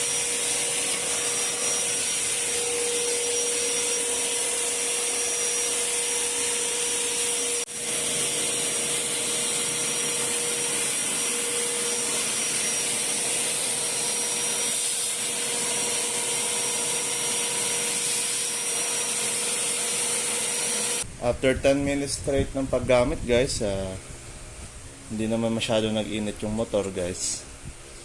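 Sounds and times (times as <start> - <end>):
vacuum cleaner whining: 0.0 - 21.1.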